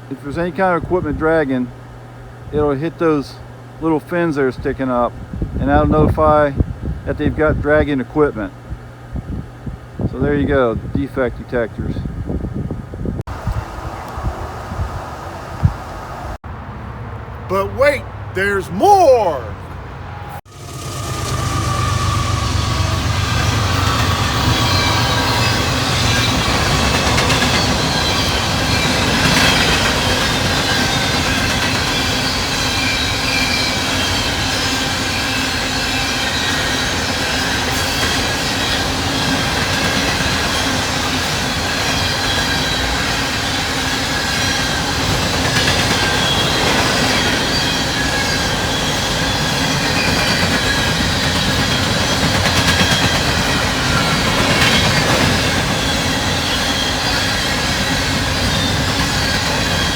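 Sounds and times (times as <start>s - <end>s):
train wheels rushing on rail: 20.5s - 59.9s.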